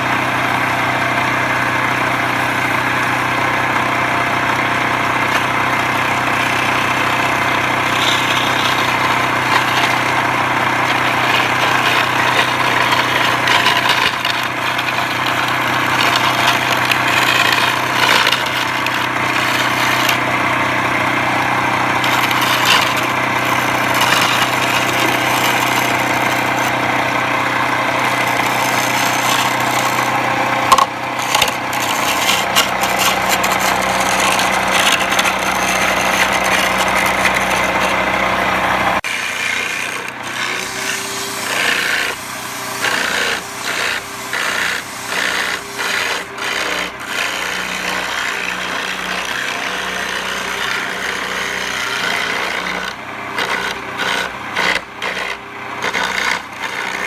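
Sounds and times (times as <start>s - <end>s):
tool scraping spinning wood: 0.0s - 57.0s
wood lathe motor hum: 0.0s - 57.0s.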